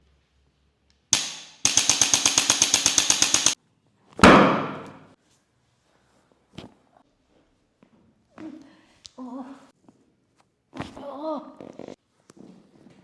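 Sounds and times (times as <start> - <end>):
rapid clicking knocks: 1.2 - 3.6, 4.2 - 5.0
heavy ringing impact: 4.2 - 5.0.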